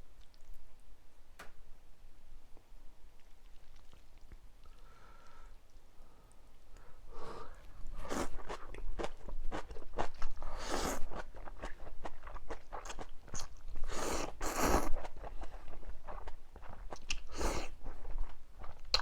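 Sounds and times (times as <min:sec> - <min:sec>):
chewing: 0:03.2 - 0:05.4, 0:07.4 - 0:19.0.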